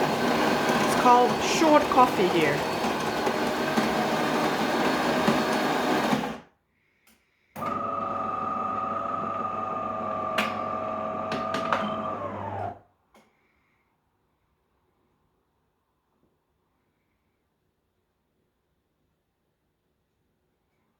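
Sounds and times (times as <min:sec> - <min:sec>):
coffee machine grinding: 0:00.0 - 0:06.4, 0:07.6 - 0:12.8
pump motor hum: 0:00.0 - 0:06.4, 0:07.6 - 0:12.8.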